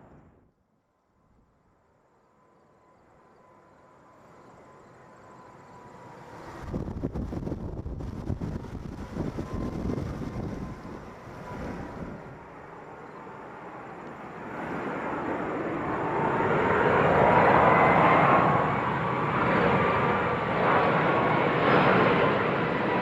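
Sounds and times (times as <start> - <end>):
jet engines roaring: 4.0 - 23.0
wind buffeting microphone: 6.4 - 12.5.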